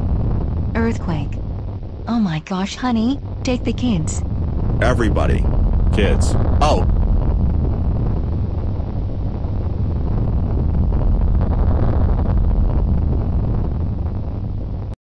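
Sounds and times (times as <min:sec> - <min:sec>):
deep earthquake rumble: 0:00.0 - 0:15.0
rushing noise: 0:03.2 - 0:15.0.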